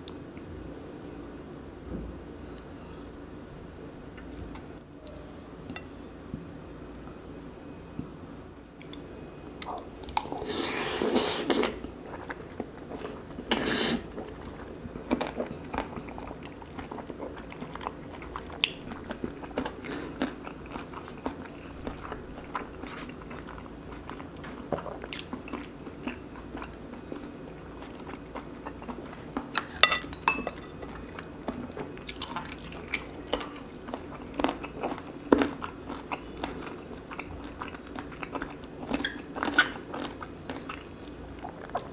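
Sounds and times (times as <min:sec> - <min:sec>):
close chewing and crunching: 0:14.0 - 0:29.8, 0:30.5 - 0:41.9.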